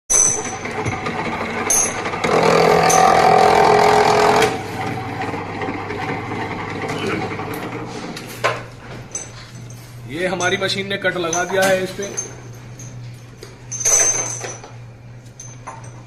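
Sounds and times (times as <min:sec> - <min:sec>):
wire stripping machine running: 0:00.1 - 0:08.6.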